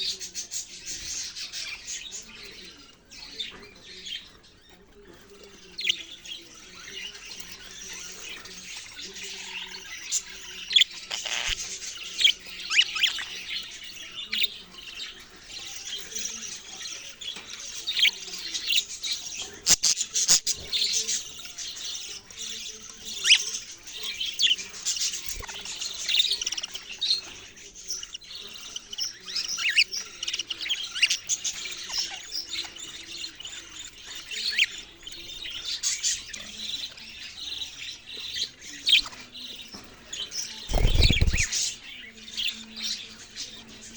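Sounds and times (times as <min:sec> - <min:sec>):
budgerigars chirping and chattering: 0:00.0 - 0:43.9.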